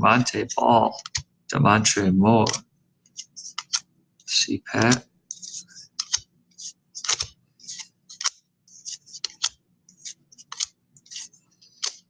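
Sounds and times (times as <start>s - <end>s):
trading cards being flipped: 2.4s - 3.9s, 4.8s - 12.0s.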